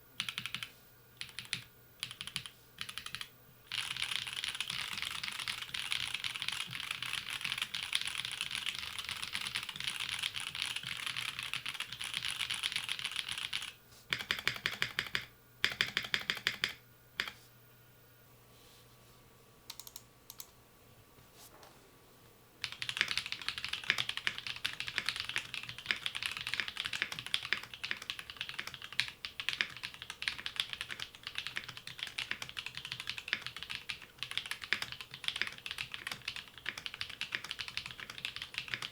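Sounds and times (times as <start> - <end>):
typing on mechanical keyboard: 0.2 - 17.4, 19.7 - 20.5, 22.6 - 38.9
rapid key taps: 22.6 - 38.9.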